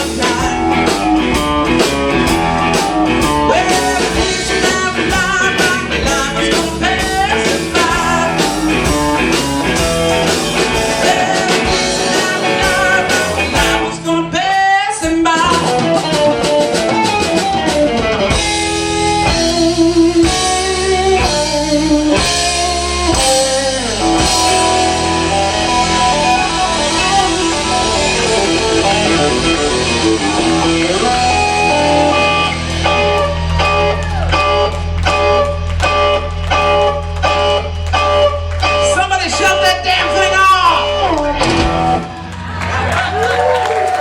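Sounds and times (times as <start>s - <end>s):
drum kit beat: 0.0s - 42.3s
bass guitar: 0.0s - 44.0s
electric guitar: 0.0s - 44.0s.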